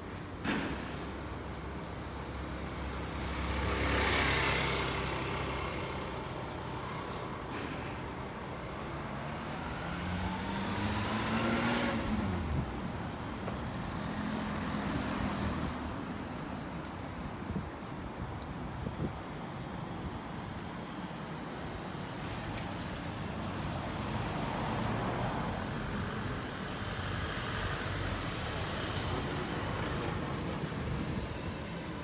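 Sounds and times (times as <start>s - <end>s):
vehicle passing by: 8.9s - 12.9s.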